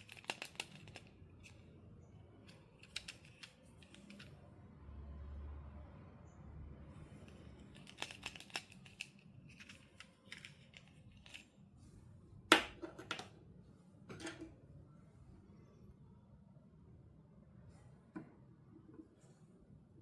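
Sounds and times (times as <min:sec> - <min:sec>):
plastic packaging clicks and crinkles: 0:00.0 - 0:01.6, 0:02.5 - 0:04.4, 0:07.6 - 0:11.5.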